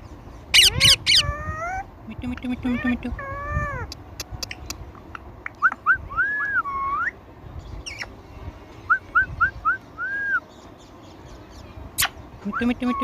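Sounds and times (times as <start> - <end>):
parrot chirping: 0.5 - 1.8.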